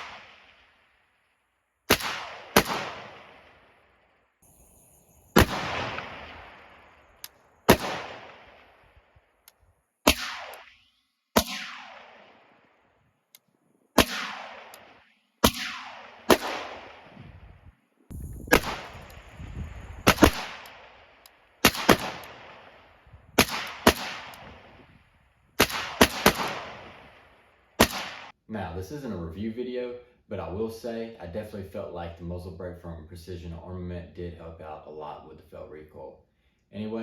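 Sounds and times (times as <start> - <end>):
rifle shots with echo: 0.0 - 0.9, 1.9 - 9.1, 10.0 - 12.8, 14.0 - 17.2, 20.0 - 24.8, 25.6 - 28.4.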